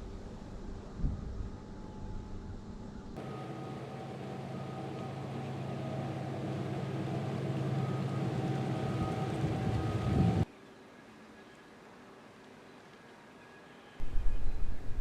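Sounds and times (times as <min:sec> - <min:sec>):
engine running: 0:00.0 - 0:10.5.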